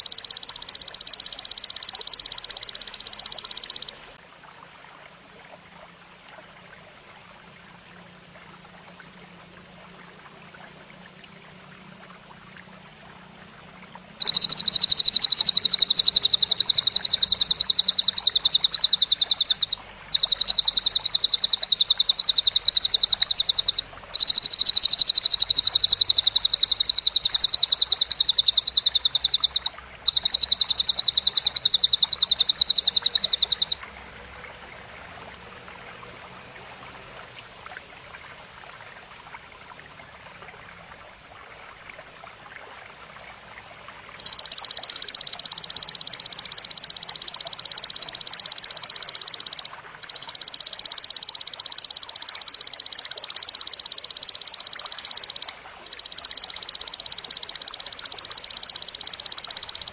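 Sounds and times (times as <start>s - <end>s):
rapid pulsed bird trill: 0.0s - 4.1s, 14.2s - 33.8s, 44.2s - 59.9s
running water hiss: 0.0s - 59.9s.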